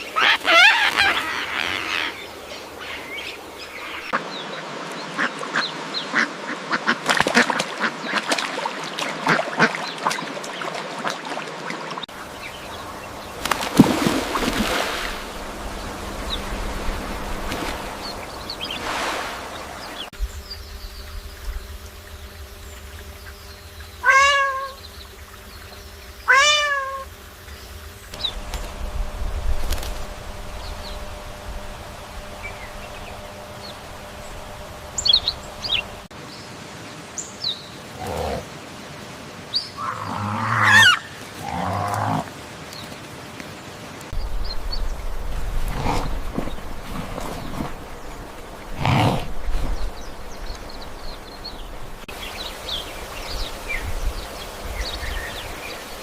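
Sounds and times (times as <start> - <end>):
pitched animal calls: 0.0 - 3.1, 24.0 - 24.9, 26.2 - 27.1, 39.8 - 42.3.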